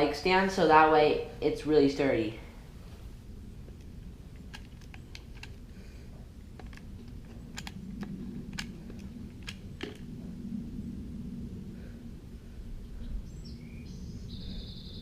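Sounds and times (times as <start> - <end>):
low steady hum: 0.0 - 15.0
small wooden pieces clicking: 3.8 - 5.7, 6.5 - 10.1.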